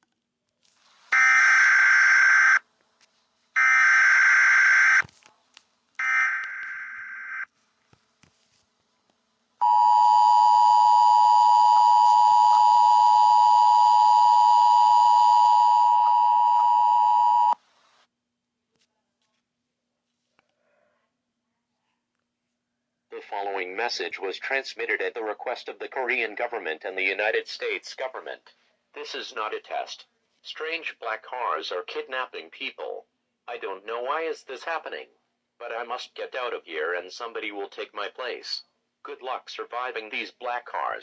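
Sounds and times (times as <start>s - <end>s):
two-tone attention signal: 9.6s - 17.6s.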